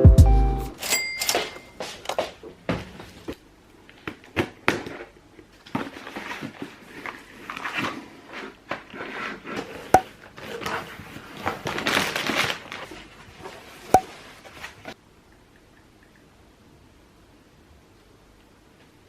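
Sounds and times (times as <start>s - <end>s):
sharp ringing clinks: 0.8s - 1.8s
rustling and handling noises: 0.8s - 15.0s.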